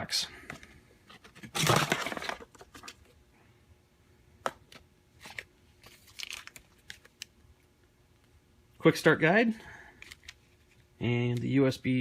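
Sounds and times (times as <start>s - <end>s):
packaging rustling: 1.1s - 3.2s, 5.2s - 7.3s, 10.0s - 10.8s.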